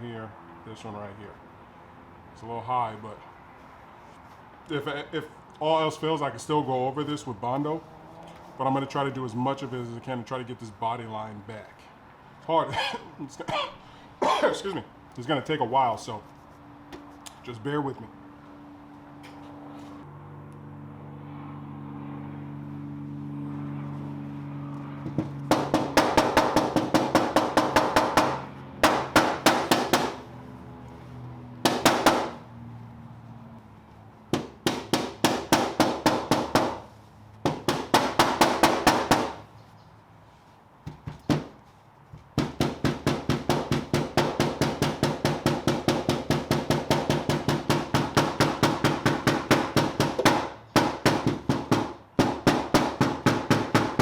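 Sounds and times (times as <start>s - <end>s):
hammer tapping sheet metal: 25.2s - 30.3s, 31.6s - 32.4s, 34.3s - 39.5s, 42.3s - 54.0s.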